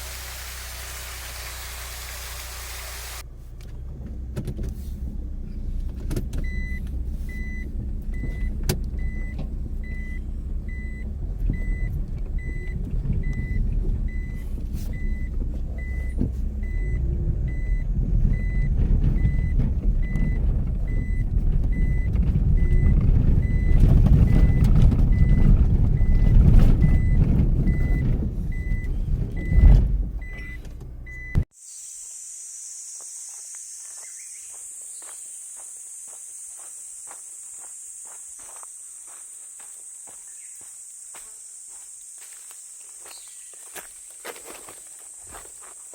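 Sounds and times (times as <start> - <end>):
car driving on rough road: 0.0 - 31.5, 33.9 - 45.9
steady high hiss: 31.6 - 43.1.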